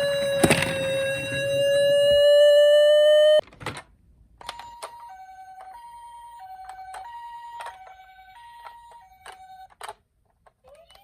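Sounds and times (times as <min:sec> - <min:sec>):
toy electronic two-tone siren: 0:00.0 - 0:03.4, 0:04.4 - 0:09.8.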